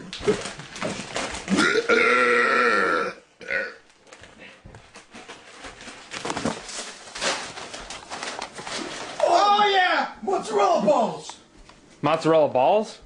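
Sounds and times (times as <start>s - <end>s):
loud burp: 1.5s - 3.8s
rustling: 4.0s - 9.7s.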